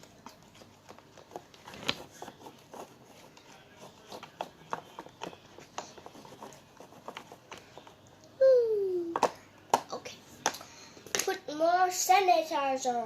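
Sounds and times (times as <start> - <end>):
slime being stirred in a bowl: 0.0 - 8.2.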